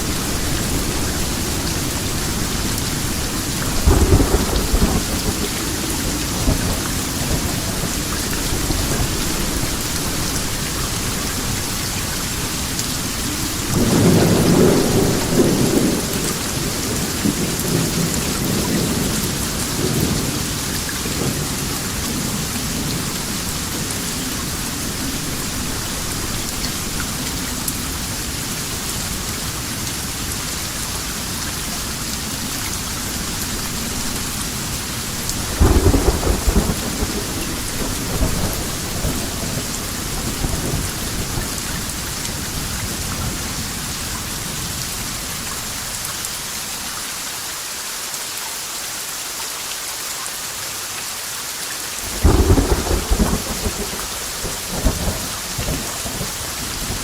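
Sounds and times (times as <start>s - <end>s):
thunder rumbling: 0.0s - 29.3s, 32.3s - 43.9s, 52.0s - 57.0s
steady rain falling: 0.0s - 57.0s.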